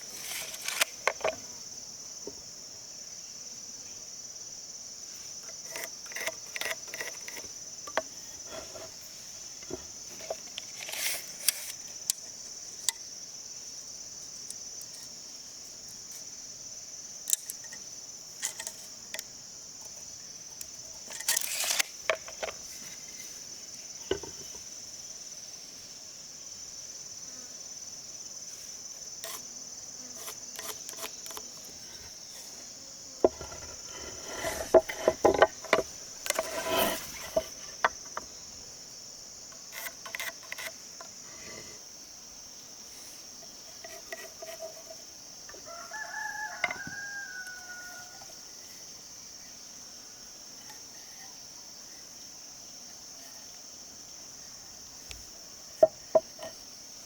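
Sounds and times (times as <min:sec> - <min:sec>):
insects buzzing: 0:00.0 - 0:57.0
sharp knocks and clatter: 0:33.2 - 0:38.3
rooster crowing: 0:45.6 - 0:48.5.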